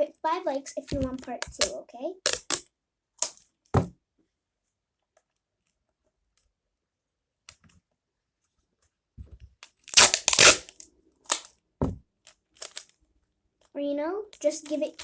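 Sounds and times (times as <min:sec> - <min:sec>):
sticky strip tearing: 0:09.9 - 0:11.5.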